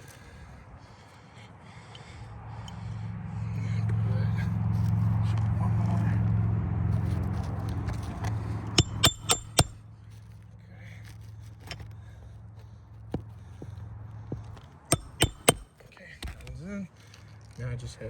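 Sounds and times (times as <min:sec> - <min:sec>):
hammer striking roofing nail: 0:08.8 - 0:09.8, 0:14.6 - 0:16.5.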